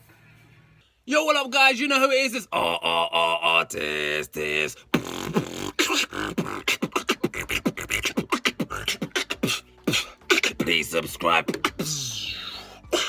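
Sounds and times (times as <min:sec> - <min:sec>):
beatboxing: 0:03.7 - 0:13.0.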